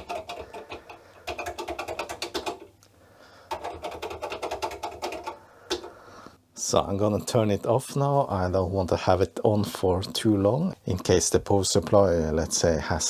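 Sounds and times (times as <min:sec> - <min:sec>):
computer keyboard typing: 0:00.0 - 0:02.8, 0:03.5 - 0:06.0.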